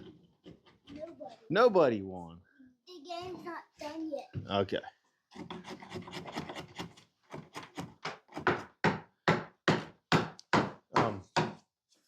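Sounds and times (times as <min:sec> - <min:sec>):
scraping and tapping: 0:00.0 - 0:01.5
chisel knocks on wood: 0:07.4 - 0:11.6.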